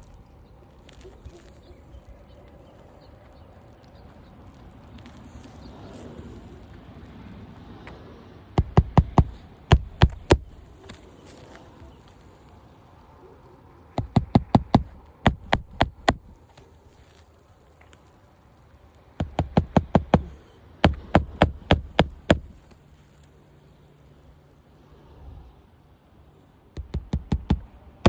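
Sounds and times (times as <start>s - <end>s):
hammer driving nails into shingle: 8.6s - 10.6s, 14.0s - 16.4s, 19.2s - 22.6s, 26.8s - 27.7s.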